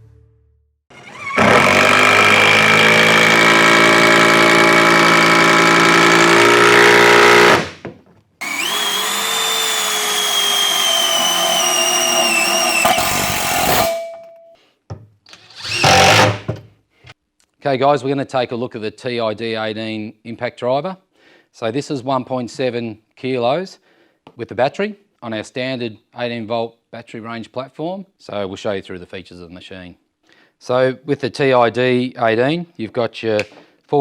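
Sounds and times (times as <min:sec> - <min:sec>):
cordless impact driver running: 0:00.9 - 0:07.8, 0:08.4 - 0:13.8, 0:15.3 - 0:16.5.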